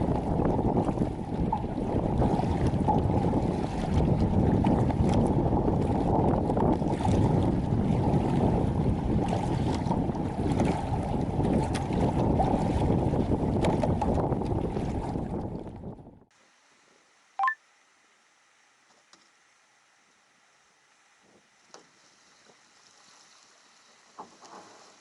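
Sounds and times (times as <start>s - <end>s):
water splashes and knocks: 0.0s - 15.9s, 21.2s - 25.0s
wind buffeting microphone: 0.0s - 16.3s.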